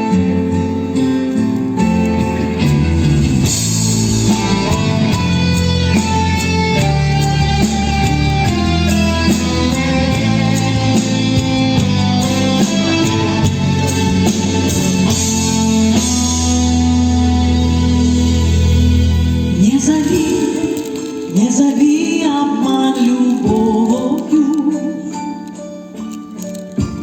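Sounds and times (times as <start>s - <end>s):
strummed and plucked guitar: 0.0s - 19.5s
bass: 0.0s - 27.0s.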